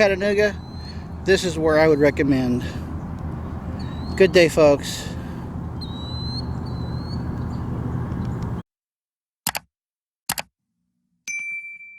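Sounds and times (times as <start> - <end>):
bird whistling: 0.0 - 8.4
distant highway traffic rumble: 0.0 - 8.6.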